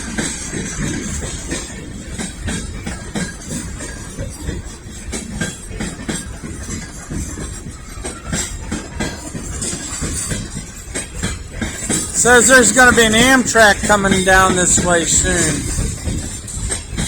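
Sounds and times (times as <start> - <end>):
wheels clicking over rail joints: 0.0 - 13.3
freight train rumbling: 0.0 - 17.0.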